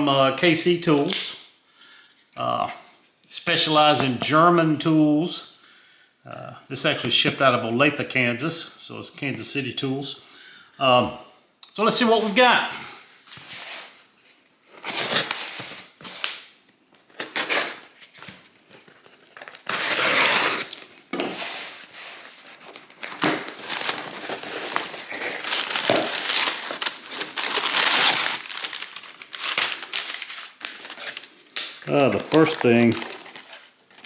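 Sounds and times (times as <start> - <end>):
packaging tearing: 14.7 - 16.4, 17.0 - 34.0
packing material crinkling: 14.7 - 34.0.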